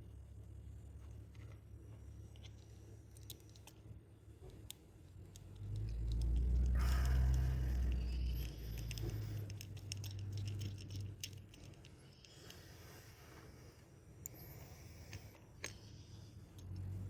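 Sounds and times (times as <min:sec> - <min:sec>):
clicks and rattles of handling: 0:01.0 - 0:07.4, 0:08.4 - 0:12.6.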